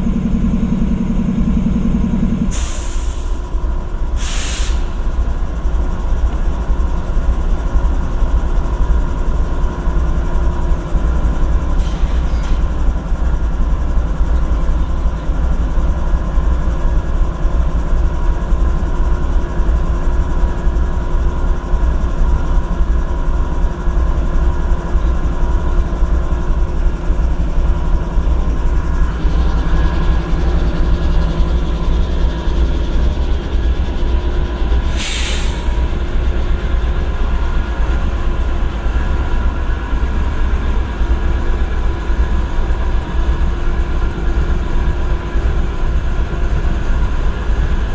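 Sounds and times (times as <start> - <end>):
diesel locomotive engine idling: 0.0 - 47.9
burst of hiss: 2.5 - 3.4, 4.2 - 5.0, 34.9 - 35.9.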